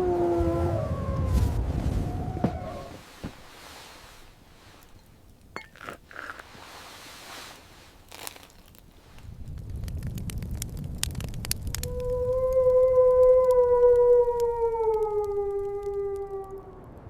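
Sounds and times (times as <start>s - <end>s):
faint crunching and clicking: 2.5s - 17.0s
low hiss: 2.6s - 9.6s.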